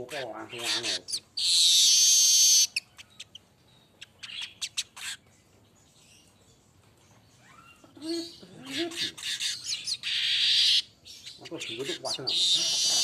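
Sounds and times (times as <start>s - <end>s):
bird chirps and ticks: 0.0s - 7.7s.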